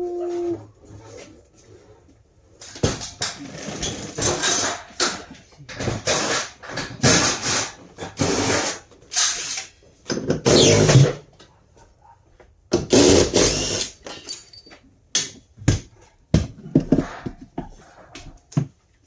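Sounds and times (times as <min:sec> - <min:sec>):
power drill bursts: 0:12.9 - 0:14.0.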